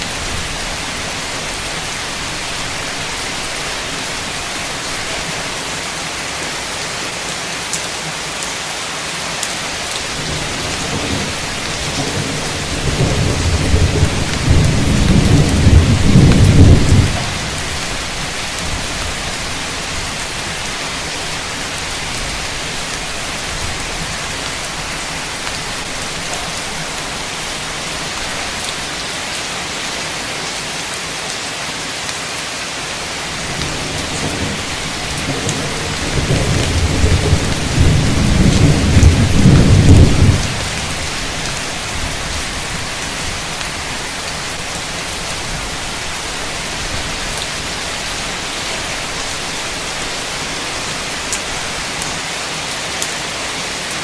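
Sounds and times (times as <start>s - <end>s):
heavy rain: 0.0s - 54.0s
thunder rumbling: 10.1s - 20.3s, 33.3s - 43.4s.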